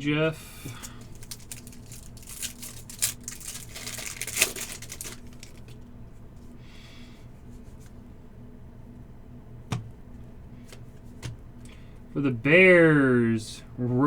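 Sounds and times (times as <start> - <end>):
faint steady hum: 0.0 - 14.0
cards crinkling and clicking: 0.6 - 5.8.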